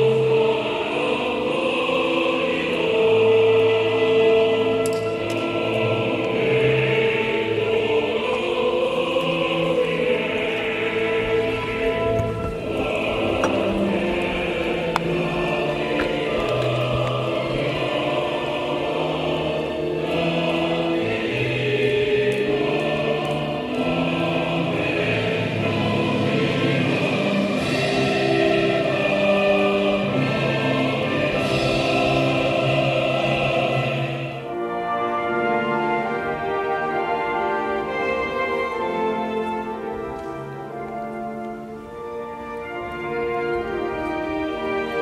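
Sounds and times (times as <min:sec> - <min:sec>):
choir singing held notes: 0:00.0 - 0:45.0
instrumental music: 0:00.0 - 0:45.0.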